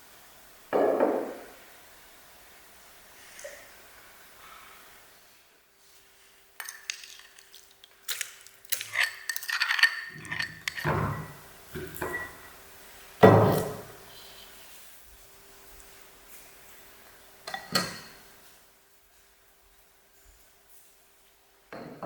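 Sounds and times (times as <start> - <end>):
dishes and utensils clinking: 6.6 - 12.6.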